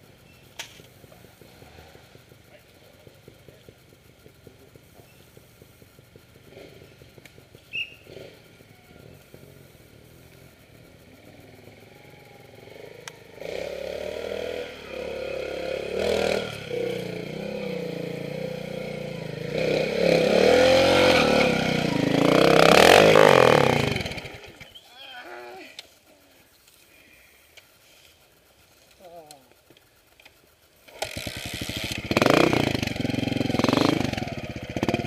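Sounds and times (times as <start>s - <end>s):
motorcycle engine revving: 0.0s - 26.0s, 27.7s - 35.0s.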